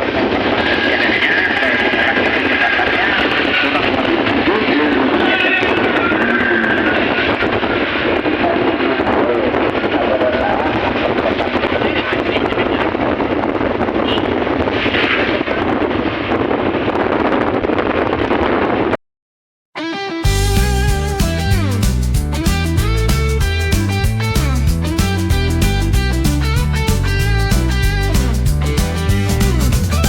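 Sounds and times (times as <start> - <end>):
faint voices: 0.0 - 14.3.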